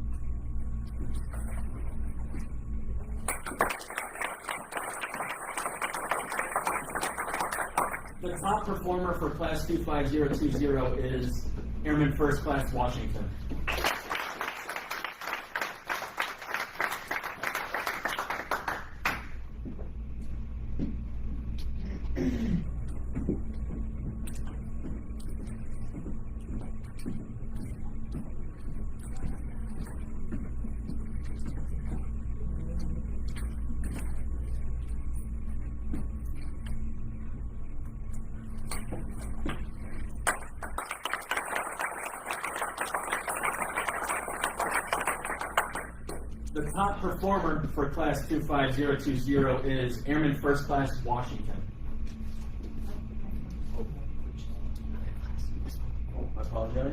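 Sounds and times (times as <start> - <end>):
low steady rumble: 0.0 - 40.9
audience applauding: 3.3 - 8.2, 13.6 - 19.4, 40.2 - 46.2.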